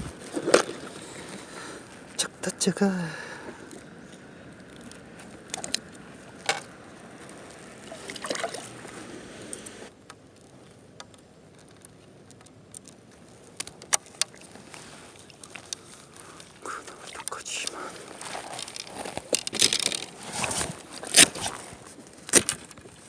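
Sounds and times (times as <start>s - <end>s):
water sloshing and lapping: 0.0s - 2.2s, 3.4s - 9.2s, 13.3s - 23.0s.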